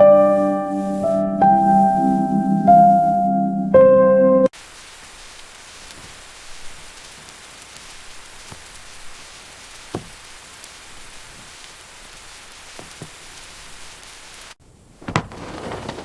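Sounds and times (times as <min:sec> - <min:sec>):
steady rain: 0:04.5 - 0:16.0.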